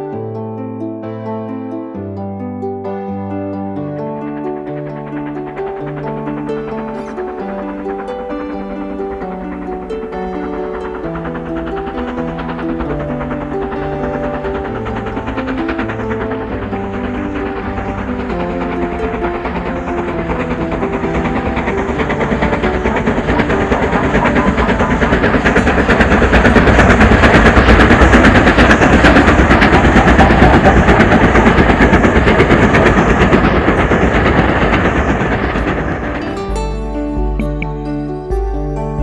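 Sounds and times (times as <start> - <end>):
train clattering past: 3.6 - 37.4.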